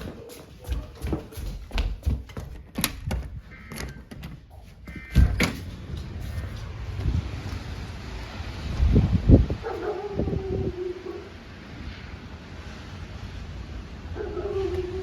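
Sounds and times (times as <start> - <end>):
knocks and thumps: 0.0 - 6.1.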